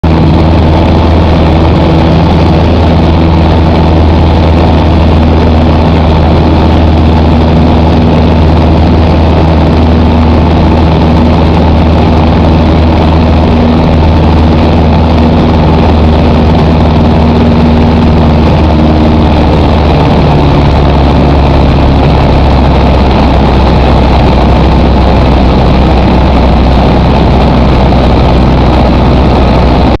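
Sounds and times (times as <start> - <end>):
propeller plane engine drone: 0.0 - 30.0.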